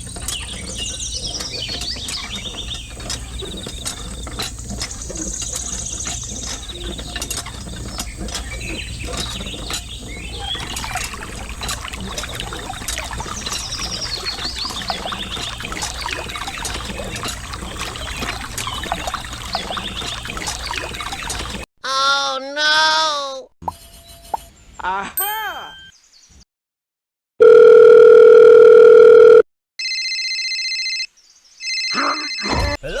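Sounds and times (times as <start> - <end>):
birds chirping and trilling: 0.0 - 21.6
steady low hum: 0.0 - 21.6.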